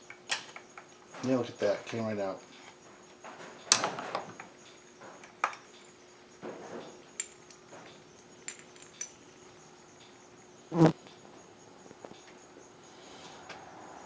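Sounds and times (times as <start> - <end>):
metal parts clinking: 8.2 - 9.2.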